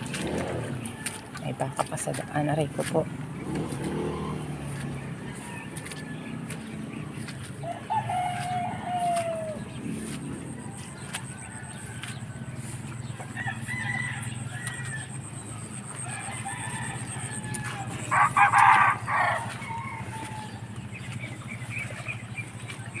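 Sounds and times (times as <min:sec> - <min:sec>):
bird calls: 0:00.0 - 0:23.0
rooster crowing: 0:07.6 - 0:09.6, 0:13.2 - 0:15.3, 0:15.9 - 0:20.8.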